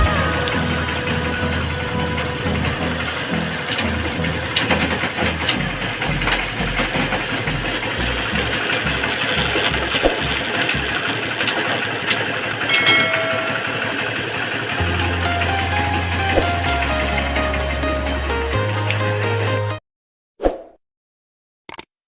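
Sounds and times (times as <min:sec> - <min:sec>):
motorcycle engine running: 0:00.0 - 0:18.1
mechanical clicks: 0:09.9 - 0:12.7.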